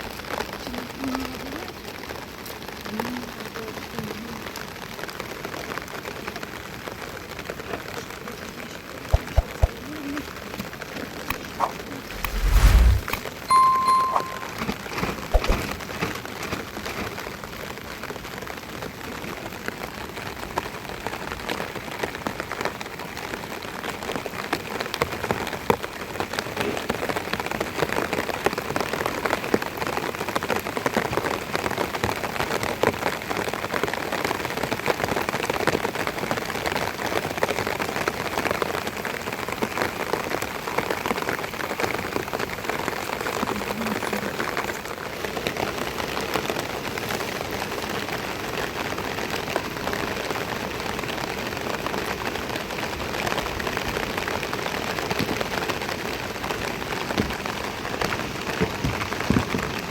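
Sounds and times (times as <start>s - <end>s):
rain drops hitting a surface: 0.0s - 59.9s.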